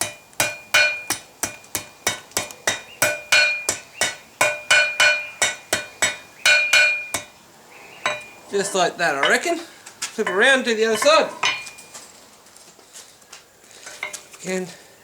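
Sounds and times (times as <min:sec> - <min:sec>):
hammer ringing on hot metal: 0:00.0 - 0:07.4, 0:08.0 - 0:09.5, 0:10.2 - 0:11.8.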